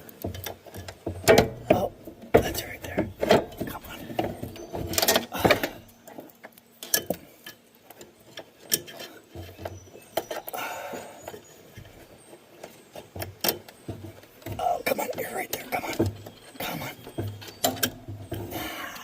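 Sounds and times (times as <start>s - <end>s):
metal parts clicking and knocking: 0.1s - 10.5s, 12.6s - 19.0s.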